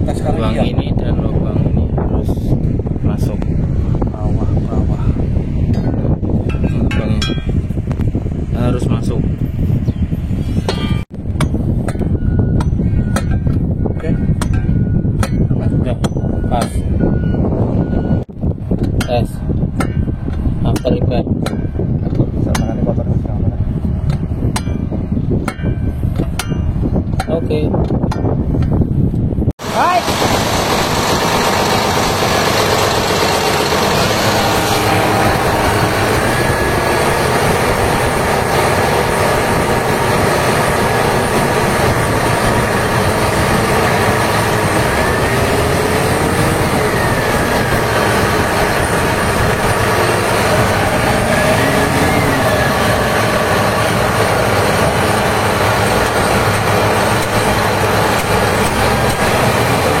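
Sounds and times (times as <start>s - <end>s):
excavator diesel engine running: 29.6s - 60.0s.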